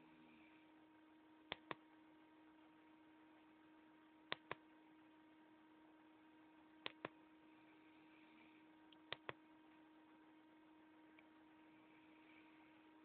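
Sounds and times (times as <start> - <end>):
steady electrical hum: 0.0 - 13.0
sharp clicks: 1.5 - 1.8, 4.3 - 4.6, 6.8 - 7.2, 9.0 - 9.4.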